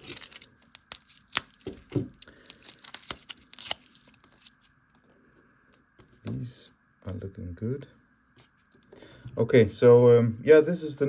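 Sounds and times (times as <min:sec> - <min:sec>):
packaging rustling and tearing: 0:00.0 - 0:04.8.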